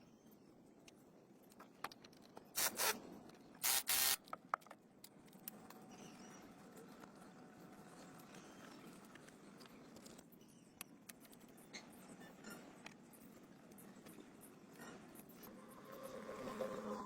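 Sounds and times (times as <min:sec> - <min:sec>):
short hissing spray bursts: 0:02.6 - 0:03.0, 0:03.6 - 0:04.2.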